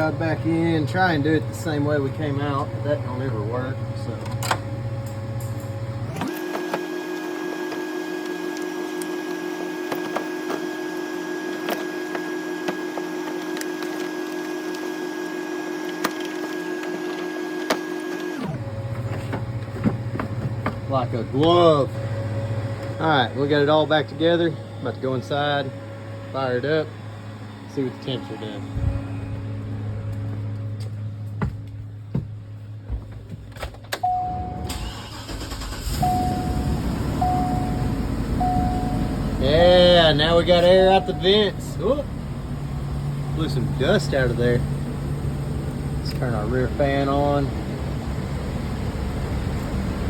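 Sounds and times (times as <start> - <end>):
steady machine hum: 0.0 - 50.0
van engine running: 0.0 - 50.0
dashboard warning chime: 34.0 - 35.1, 35.7 - 41.8.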